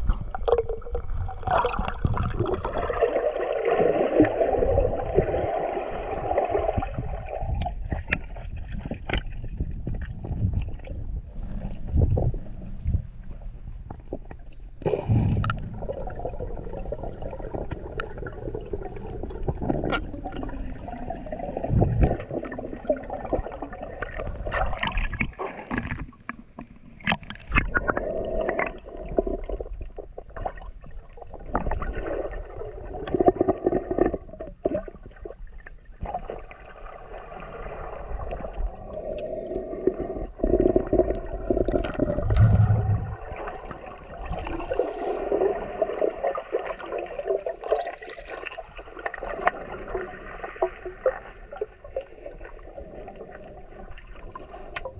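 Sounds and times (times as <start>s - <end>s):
muffled underwater gurgling: 14.0s - 26.0s, 27.0s - 54.9s.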